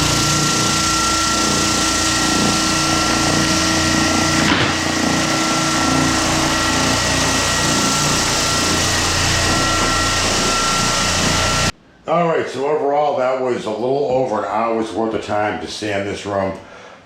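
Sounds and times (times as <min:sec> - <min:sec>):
sander bump: 0:00.0 - 0:11.7
floor sander humming and whining: 0:00.0 - 0:11.8.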